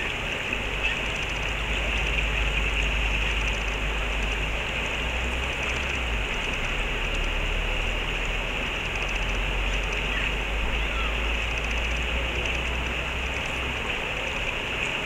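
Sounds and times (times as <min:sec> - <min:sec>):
stream water rushing over rocks: 0:00.0 - 0:15.0.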